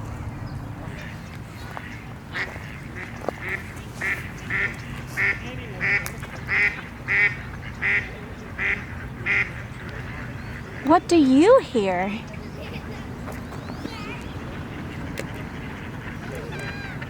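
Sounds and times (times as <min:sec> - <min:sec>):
waterfowl calling: 0:00.9 - 0:12.0, 0:13.9 - 0:17.0.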